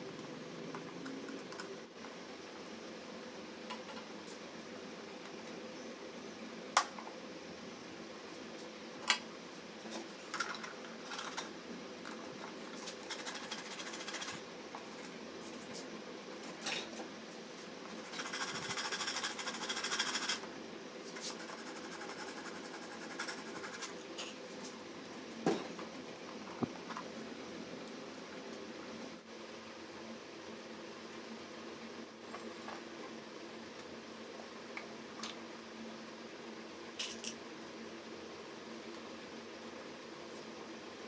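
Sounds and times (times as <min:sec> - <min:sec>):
steady low hum: 0:00.0 - 0:41.0
rapid rattling buzz: 0:12.6 - 0:15.1, 0:17.9 - 0:20.5.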